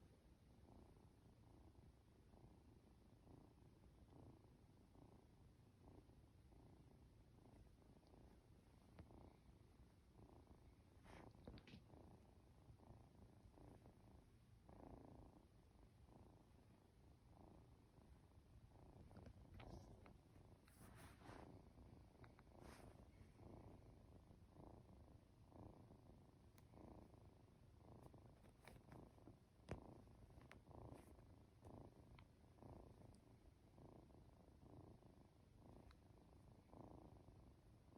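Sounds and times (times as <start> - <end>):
kitten purring: 0.0 - 37.9
faint crackles: 7.3 - 15.4, 18.7 - 24.8, 25.5 - 36.9.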